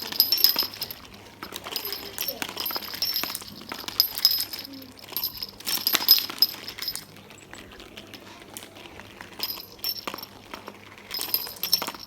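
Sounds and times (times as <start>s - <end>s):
ringing clinks: 0.0s - 7.1s, 9.4s - 10.4s, 11.1s - 12.0s
marble clicks: 0.0s - 12.0s
marbles rolling through marble run: 0.0s - 12.0s.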